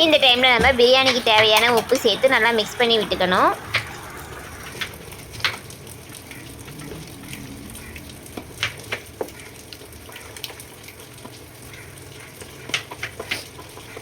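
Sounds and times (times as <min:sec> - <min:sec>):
food sizzling in a pot: 0:00.0 - 0:14.0.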